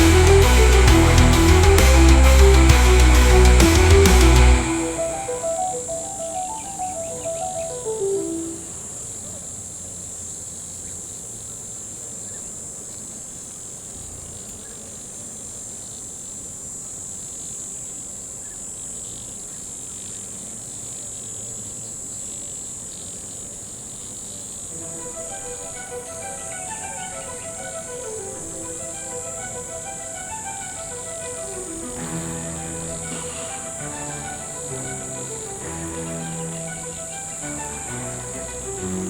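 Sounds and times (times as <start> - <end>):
background music: 0.0 - 8.8, 24.7 - 39.0
insects chorus: 0.0 - 39.0.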